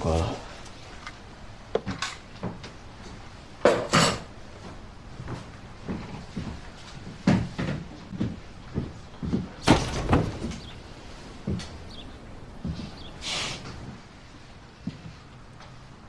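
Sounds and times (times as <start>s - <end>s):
knocks and thumps from handling: 5.9s - 13.0s
short rush of hiss: 13.2s - 13.8s.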